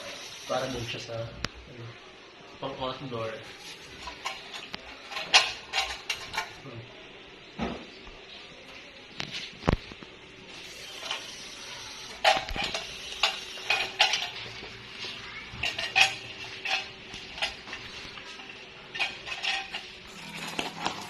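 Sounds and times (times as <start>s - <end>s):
light fixtures clinking and knocking: 12.2s - 14.6s, 15.6s - 21.0s.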